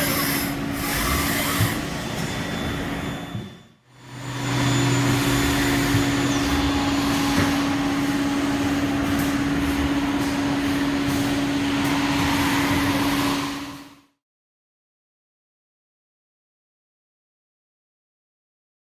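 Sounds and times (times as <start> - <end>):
machine noise hiss: 0.0 - 3.0
low machine hum: 0.0 - 13.9
machine mid-pitched hum: 0.0 - 14.0.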